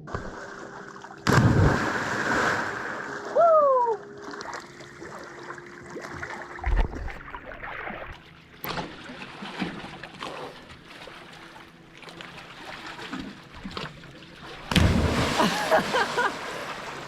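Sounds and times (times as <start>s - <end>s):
water splashing around kayak: 0.0s - 3.4s, 4.2s - 17.0s
dull thump: 14.7s - 15.4s.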